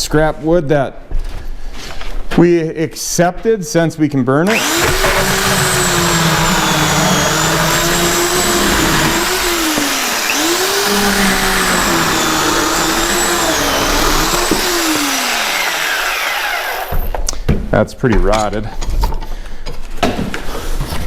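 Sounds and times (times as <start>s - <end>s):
electric chainsaw cutting wood: 4.5s - 17.1s.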